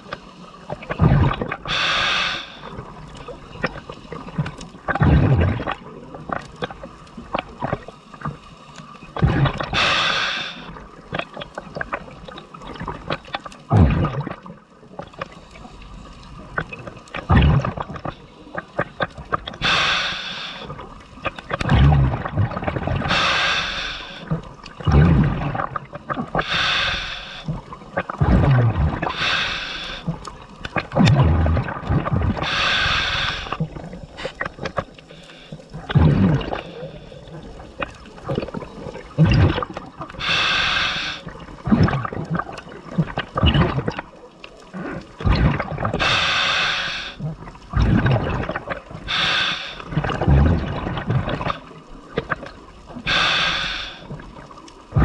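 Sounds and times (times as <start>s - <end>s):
gurgling exhale bubbles: 0.0s - 8.4s, 9.0s - 55.0s
regulator inhale hiss: 1.7s - 2.8s, 9.7s - 10.7s, 19.6s - 20.9s, 23.0s - 24.4s, 26.4s - 27.7s, 29.0s - 30.3s, 32.4s - 33.6s, 34.2s - 35.7s, 36.5s - 37.3s, 40.2s - 41.4s, 46.0s - 47.3s, 49.0s - 49.9s, 53.0s - 54.2s.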